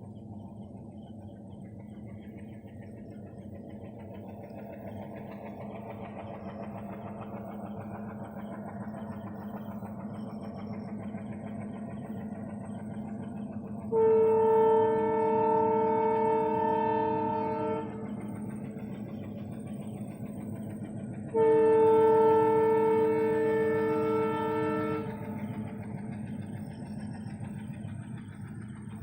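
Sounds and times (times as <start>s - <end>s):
train rumble: 0.0s - 29.0s
train horn blast: 13.9s - 18.1s, 21.3s - 25.6s.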